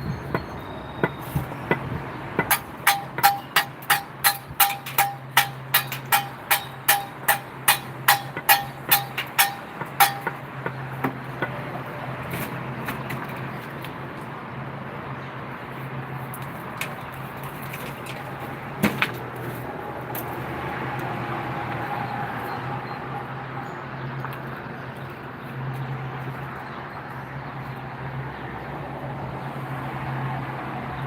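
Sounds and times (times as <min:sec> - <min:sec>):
engine-like hum: 0:00.0 - 0:31.0
sharp knocks: 0:00.3 - 0:11.6.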